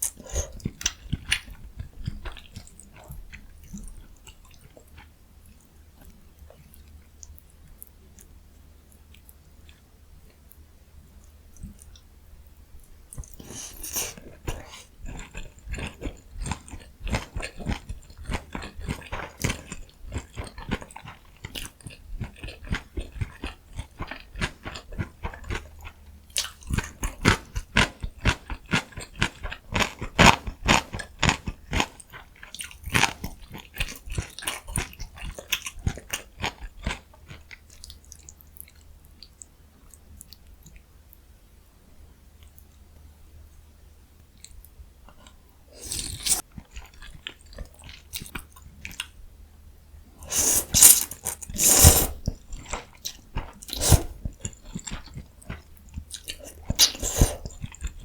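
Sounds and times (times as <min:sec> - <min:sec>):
close-miked chewing of food: 0:00.0 - 0:41.2, 0:44.2 - 0:49.3, 0:50.1 - 0:58.0
loud bite: 0:50.2 - 0:52.3, 0:53.7 - 0:54.2, 0:56.3 - 0:57.5.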